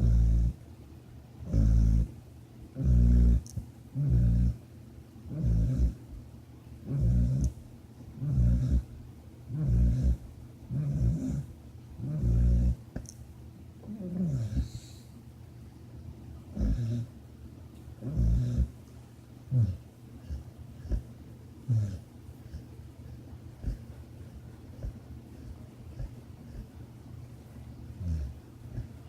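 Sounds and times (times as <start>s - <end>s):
loud rhythmic snoring: 0.0s - 0.6s, 1.4s - 2.1s, 2.8s - 4.6s, 5.3s - 6.0s, 6.8s - 7.6s, 8.2s - 8.9s, 9.5s - 12.8s, 13.9s - 14.9s, 16.5s - 17.1s, 18.0s - 18.7s, 19.5s - 21.1s, 21.7s - 26.8s, 28.0s - 29.0s.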